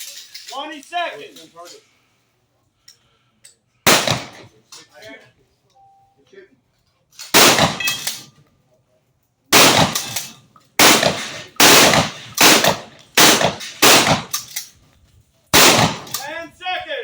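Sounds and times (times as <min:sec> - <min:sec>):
shotgun shots: 0:03.9 - 0:04.5, 0:07.3 - 0:08.3, 0:09.5 - 0:14.4, 0:15.5 - 0:16.2.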